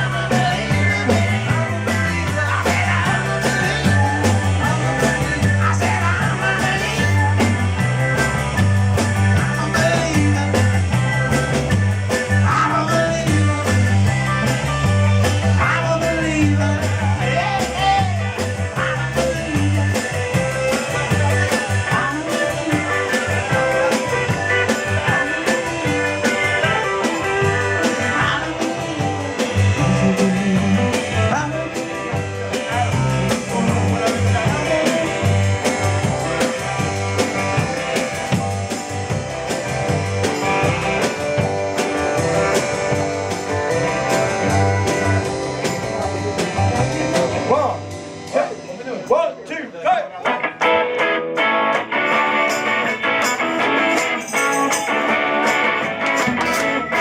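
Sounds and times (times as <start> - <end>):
drum beat: 0.0 - 49.0, 51.9 - 57.0
electric guitar: 0.0 - 49.2, 49.8 - 57.0
bass line: 0.0 - 57.0.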